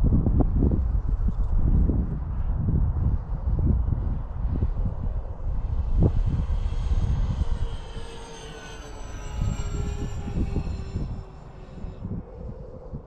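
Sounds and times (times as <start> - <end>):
model plane propeller whine: 0.0 - 13.0
wind buffeting microphone: 0.0 - 13.0.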